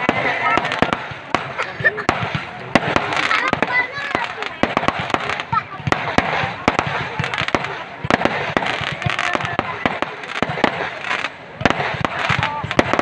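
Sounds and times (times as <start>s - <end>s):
firecrackers cracking and banging: 0.0s - 13.0s.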